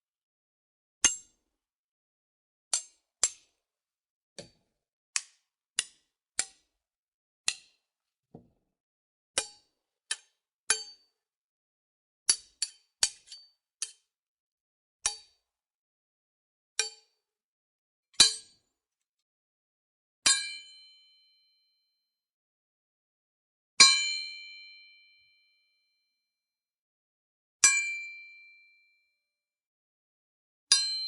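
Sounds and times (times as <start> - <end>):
sword blades clanging on metal: 12.3 - 14.0.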